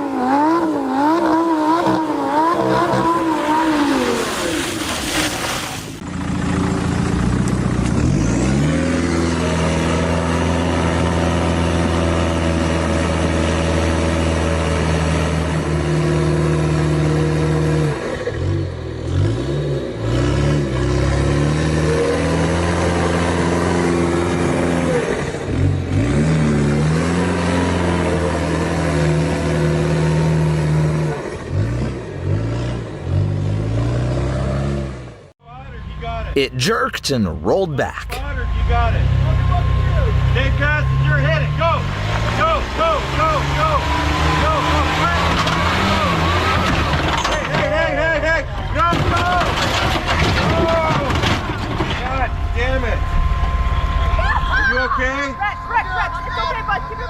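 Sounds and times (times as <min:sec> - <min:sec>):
vehicle engine at high revs: 0:00.0 - 0:04.6, 0:06.0 - 0:35.2, 0:40.6 - 0:47.2.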